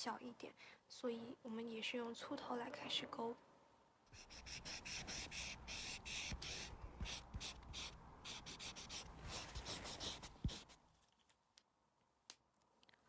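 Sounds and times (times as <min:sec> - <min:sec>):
marker scratching on paper: 0:04.1 - 0:10.8.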